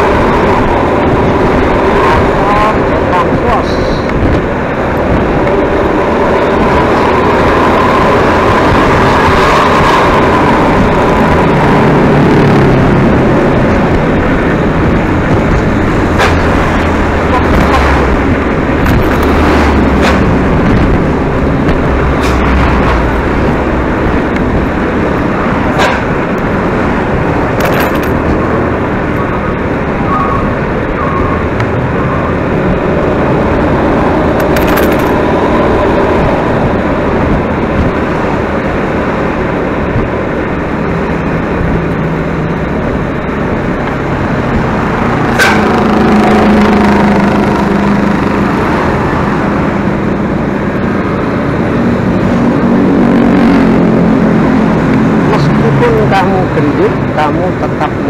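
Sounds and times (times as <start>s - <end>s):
bus engine and road noise: 0.0s - 58.0s
short clicks or knocks: 27.6s - 28.4s.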